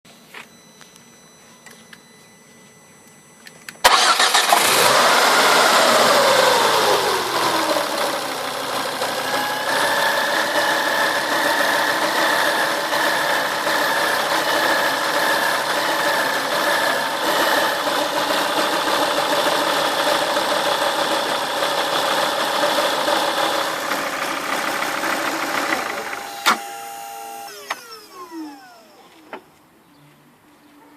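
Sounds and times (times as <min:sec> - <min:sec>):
car engine starting and idling: 0:03.8 - 0:29.5
engine switch click: 0:26.4 - 0:26.7.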